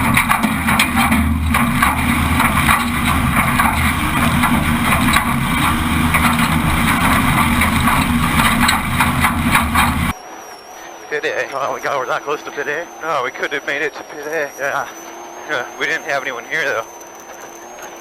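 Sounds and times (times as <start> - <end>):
chassis rattling and knocking: 0.0 - 10.2
vehicle engine under load: 0.0 - 18.0.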